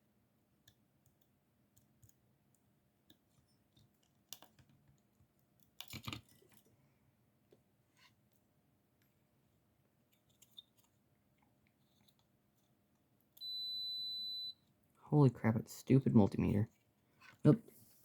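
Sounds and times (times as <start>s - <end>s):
plastic parts clicking: 3.8s - 4.8s, 5.6s - 6.7s.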